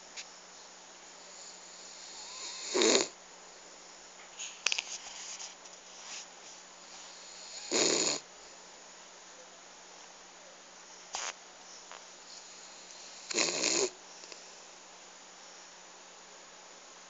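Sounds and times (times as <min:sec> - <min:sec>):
quiet breathing: 0:01.1 - 0:02.7
loud snores: 0:01.4 - 0:03.2, 0:07.2 - 0:08.2, 0:12.4 - 0:14.0.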